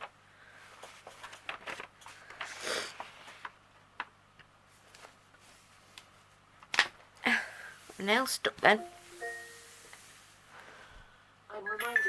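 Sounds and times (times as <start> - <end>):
plastic sheet crinkling: 0.8 - 3.6.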